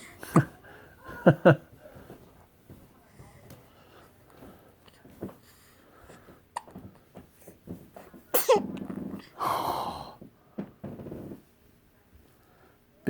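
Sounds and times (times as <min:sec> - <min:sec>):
baby breathy noises and hiccups: 0:06.5 - 0:06.8, 0:08.3 - 0:09.4
baby sneezing: 0:08.3 - 0:08.7.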